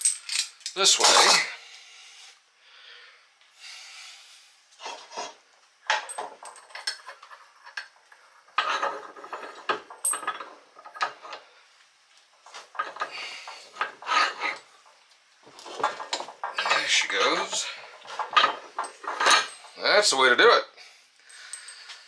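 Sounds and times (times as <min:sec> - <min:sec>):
metal clinks and scraping of tools: 0:00.0 - 0:01.5, 0:04.8 - 0:11.4, 0:12.4 - 0:20.2, 0:21.2 - 0:22.0.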